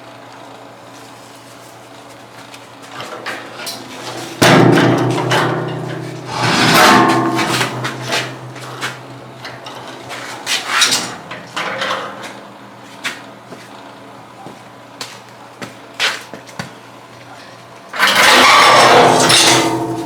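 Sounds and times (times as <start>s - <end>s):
steady low hum: 0.8s - 16.0s
metal table clunking and knocking: 3.1s - 12.4s.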